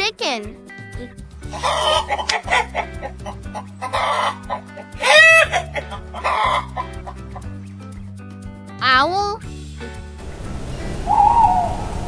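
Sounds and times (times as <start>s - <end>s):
backing music: 0.0s - 12.0s
chicken squawk: 1.6s - 2.7s, 3.9s - 6.8s, 10.6s - 12.0s.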